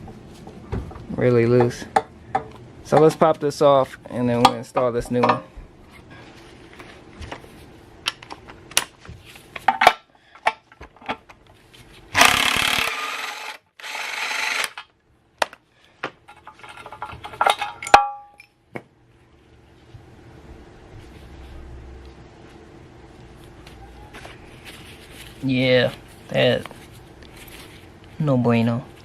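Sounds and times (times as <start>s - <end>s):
power ratchet running: 12.1s - 14.8s.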